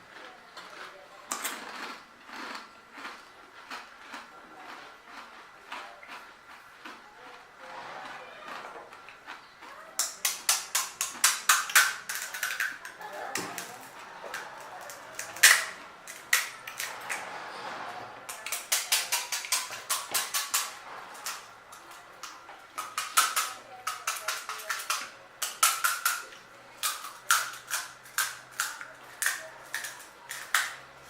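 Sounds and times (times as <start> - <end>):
crunching and chewing crisp shells: 0.0 - 17.3, 18.2 - 31.0.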